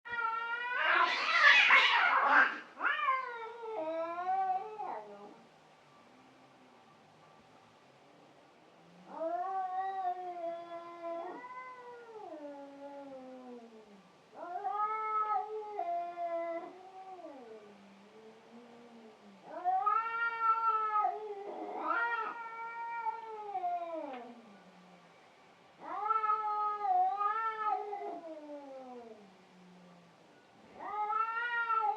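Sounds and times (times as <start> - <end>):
cats yowling in a fight: 0.1 - 5.4, 9.0 - 17.8, 18.5 - 24.5, 25.8 - 29.8, 30.7 - 31.9.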